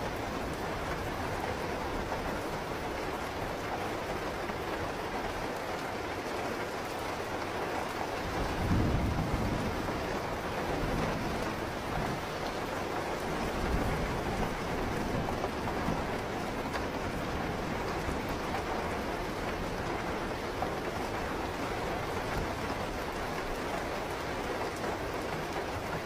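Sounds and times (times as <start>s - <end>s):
steady rain falling: 0.0s - 26.0s
low rumble of thunder: 8.1s - 24.4s.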